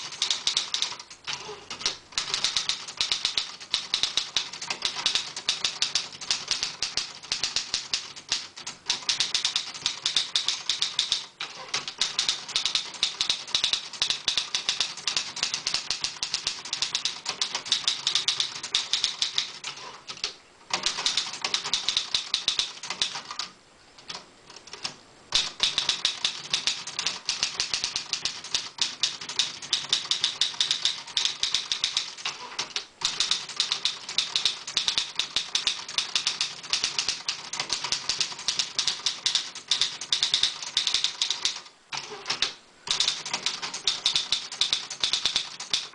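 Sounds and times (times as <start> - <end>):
typewriter key strikes: 0.0 - 23.5, 24.1 - 45.9.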